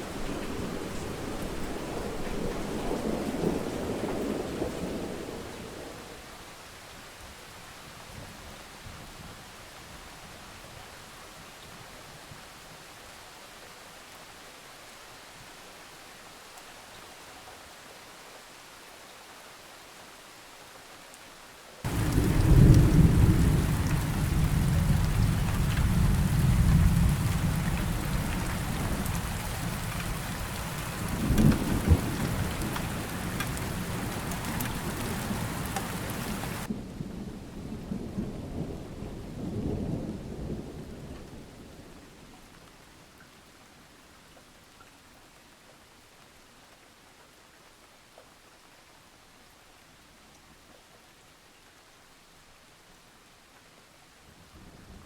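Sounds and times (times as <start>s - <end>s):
rain falling: 0.0s - 55.0s
thunderclap: 21.9s - 40.5s
thunder rumbling: 21.9s - 41.1s.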